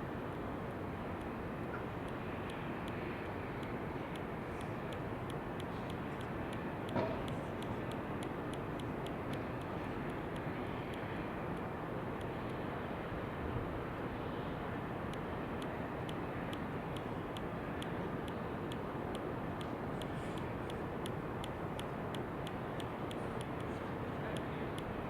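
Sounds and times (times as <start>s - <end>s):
white-noise hiss: 0.0s - 25.0s
wind: 0.0s - 25.0s
light regular ticking: 0.6s - 13.4s, 14.8s - 25.0s.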